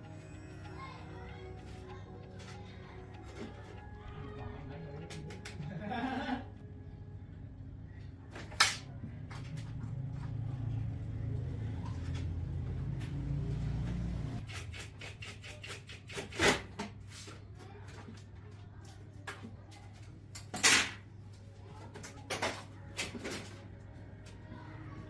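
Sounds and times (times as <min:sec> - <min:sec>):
tools and metal parts clicking: 0:20.3 - 0:21.0.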